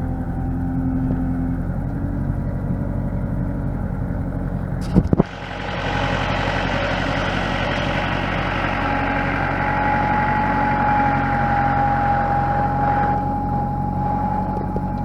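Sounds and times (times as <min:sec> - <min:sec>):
loader engine running: 0:00.0 - 0:15.0
thin steady whine: 0:04.7 - 0:15.0.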